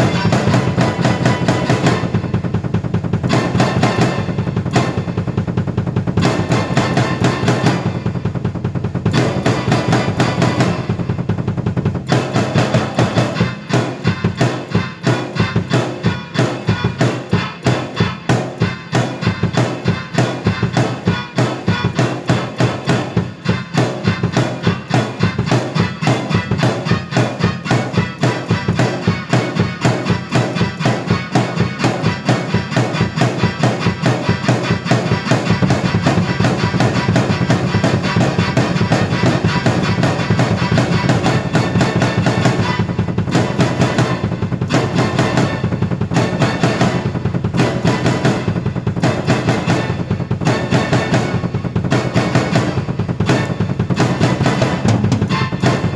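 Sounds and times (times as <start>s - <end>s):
drum beat: 0.0s - 55.9s
sustained keyboard chords: 11.9s - 55.9s.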